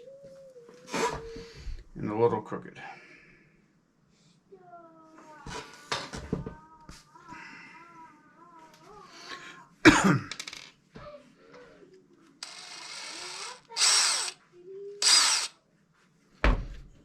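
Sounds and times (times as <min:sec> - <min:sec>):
power drill boring: 0:12.4 - 0:14.4, 0:15.0 - 0:15.6.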